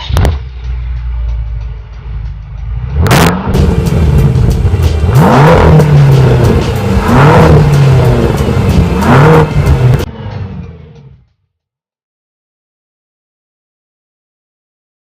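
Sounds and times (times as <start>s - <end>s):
car engine revving: 2.8s - 11.2s.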